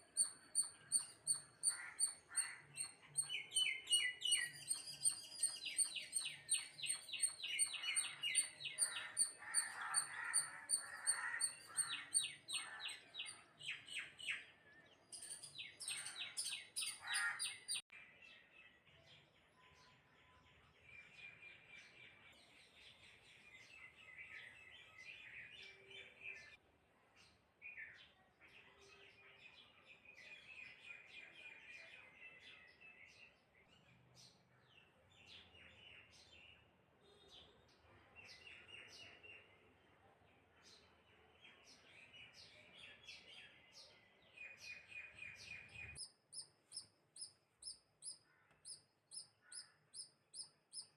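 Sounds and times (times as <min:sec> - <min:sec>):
birds chirping: 0:00.0 - 0:17.9, 0:41.6 - 0:50.9.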